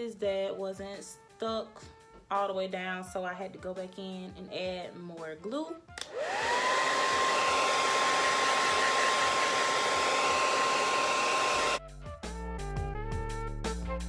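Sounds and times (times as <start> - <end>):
music: 0.0 - 6.1, 11.8 - 14.0
hair dryer blowing: 6.0 - 11.8.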